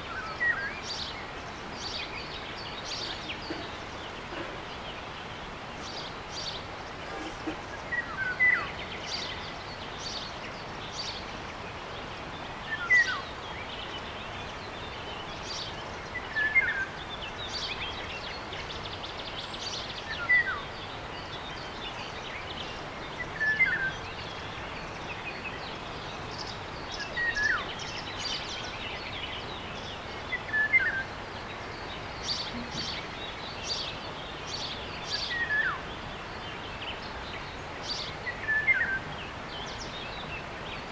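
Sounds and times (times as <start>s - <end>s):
birds chirping: 0.0s - 11.2s, 24.9s - 40.9s.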